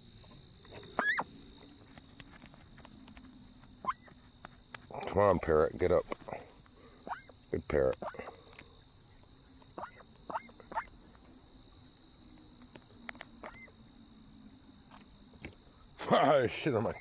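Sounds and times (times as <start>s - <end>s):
crickets chirring: 0.0s - 17.0s
duck soft calls: 7.9s - 8.3s, 9.7s - 10.9s, 13.4s - 13.7s.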